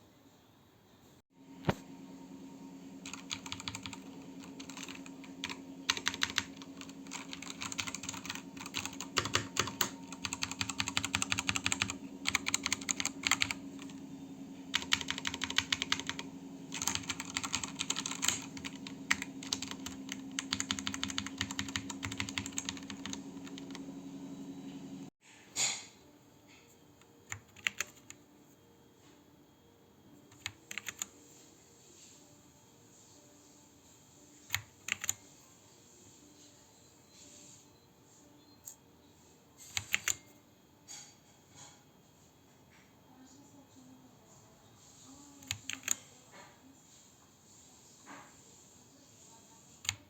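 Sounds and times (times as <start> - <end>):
steady low hum: 1.4 - 25.1.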